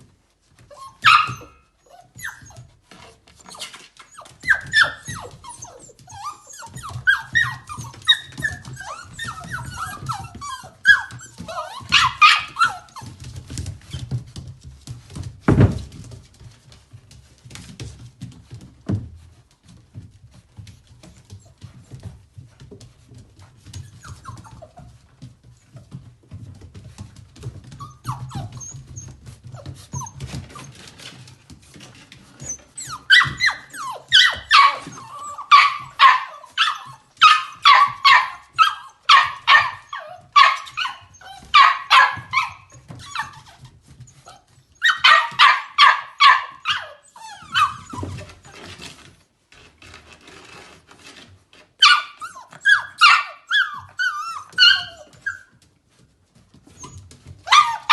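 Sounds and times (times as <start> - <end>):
dog yapping: 0.7 - 2.6, 3.4 - 13.1, 32.4 - 43.6, 44.2 - 48.3, 51.8 - 55.4, 56.8 - 57.9.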